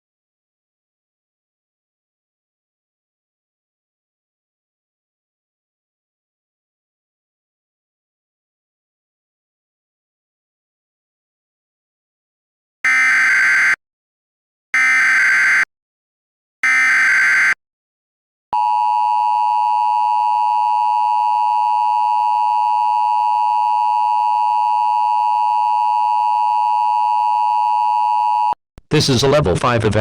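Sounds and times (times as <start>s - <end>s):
screeching data bursts: 14.8s - 15.6s, 16.6s - 17.6s
steady attention tone: 18.6s - 28.6s.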